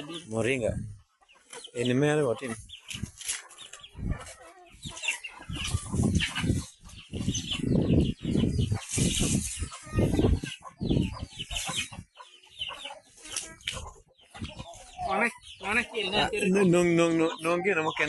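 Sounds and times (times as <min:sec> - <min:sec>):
chickens clucking: 0:00.0 - 0:18.0.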